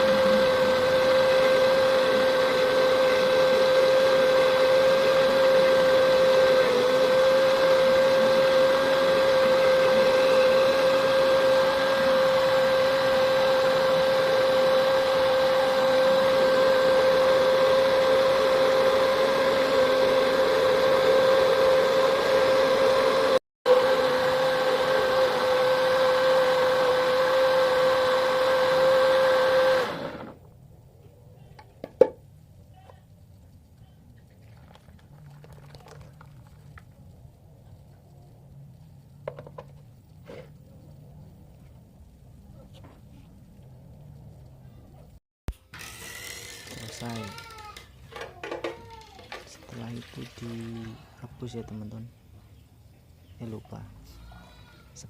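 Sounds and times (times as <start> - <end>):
blender motor whine: 0.0 - 30.4, 45.5 - 48.6.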